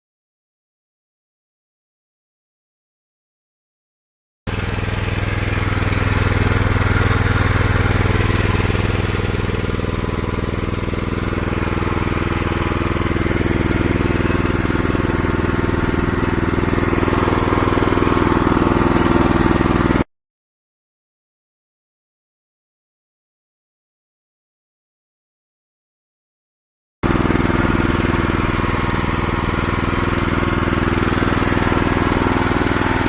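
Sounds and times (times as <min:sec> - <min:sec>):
loader engine running: 0:04.5 - 0:20.0, 0:27.0 - 0:33.0.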